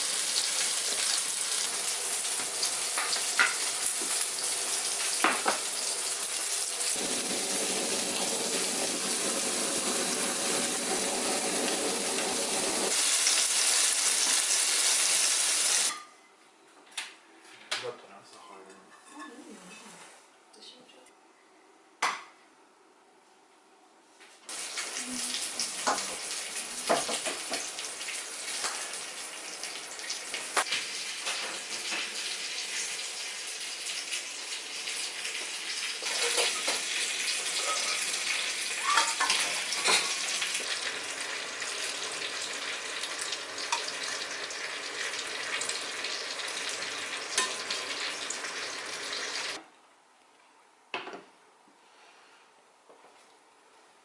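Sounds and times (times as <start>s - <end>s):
dishes and utensils clinking: 18.6s - 19.8s, 36.0s - 36.9s, 38.8s - 40.3s, 47.4s - 47.7s.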